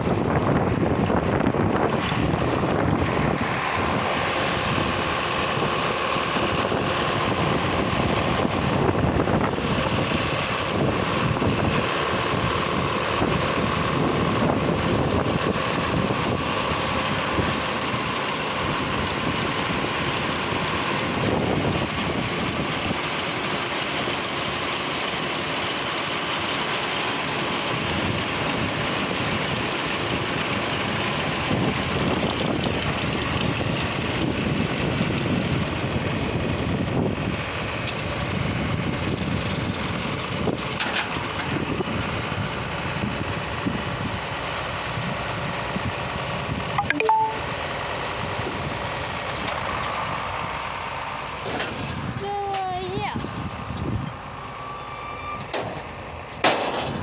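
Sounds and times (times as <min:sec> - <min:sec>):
wind buffeting microphone: 0:00.0 - 0:23.0, 0:27.7 - 0:46.8, 0:52.9 - 0:54.2
tractor engine running: 0:00.0 - 0:57.0.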